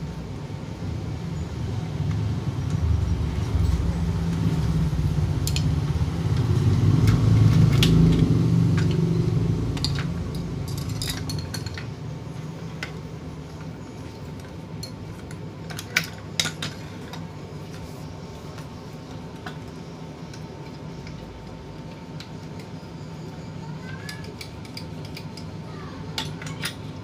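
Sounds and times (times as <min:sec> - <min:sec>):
small metal parts clinking: 0:06.9 - 0:12.0, 0:13.6 - 0:17.8, 0:23.6 - 0:27.0.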